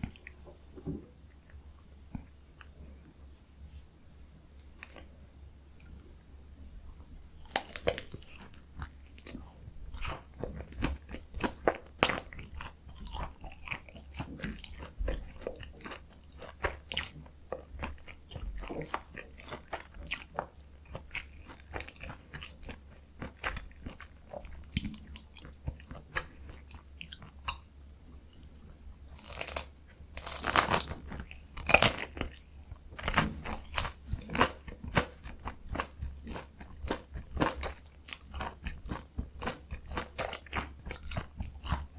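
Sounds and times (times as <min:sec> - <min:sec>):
crisp crunching of chewing: 0:07.4 - 0:27.7, 0:28.3 - 0:41.9.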